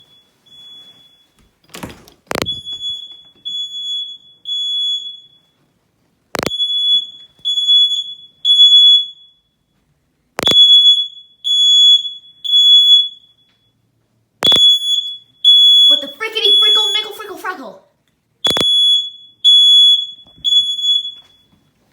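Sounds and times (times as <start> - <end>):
smoke alarm beeping: 0.0 - 5.6, 6.4 - 9.7, 10.4 - 13.8, 14.4 - 17.6, 18.4 - 21.8
sharp click: 18.5 - 18.7.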